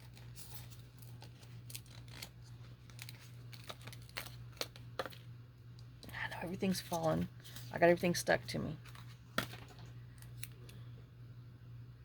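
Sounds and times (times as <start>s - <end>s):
paper rustling and crinkling: 0.0s - 5.2s.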